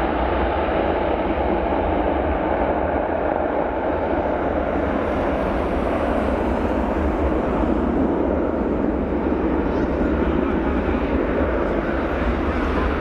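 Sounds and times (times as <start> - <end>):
jet engines running: 0.0 - 13.0.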